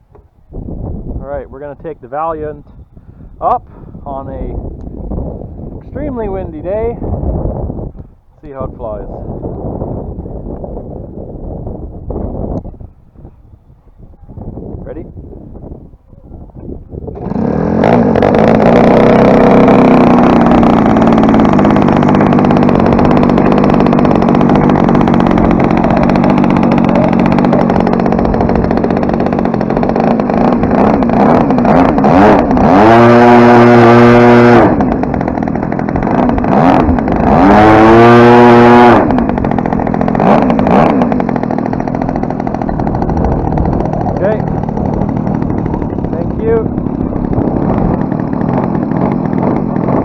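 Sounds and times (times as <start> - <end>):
model airplane engine running: 16.4 - 50.0.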